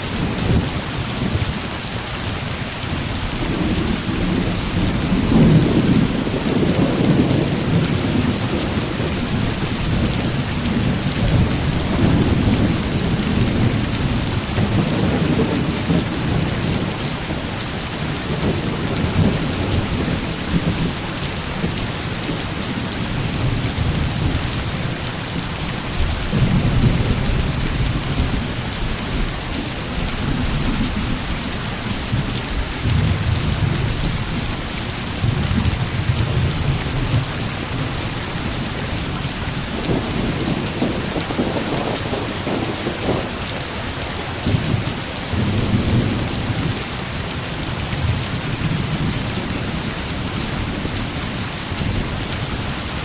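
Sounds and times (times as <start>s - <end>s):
heavy rain falling: 0.0s - 53.0s
thunder rumbling: 3.3s - 25.0s, 35.1s - 46.8s.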